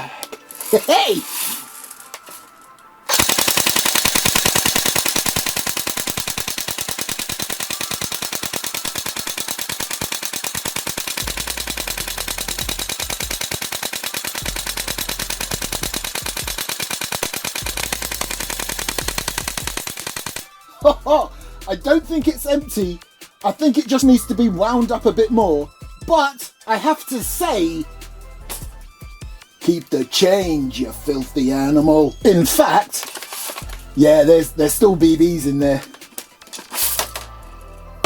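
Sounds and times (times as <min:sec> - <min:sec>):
airsoft gun full-auto firing: 0:03.1 - 0:20.5.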